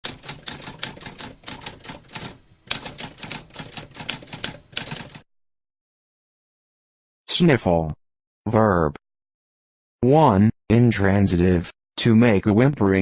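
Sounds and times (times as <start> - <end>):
typewriter typing: 0.0 - 5.2.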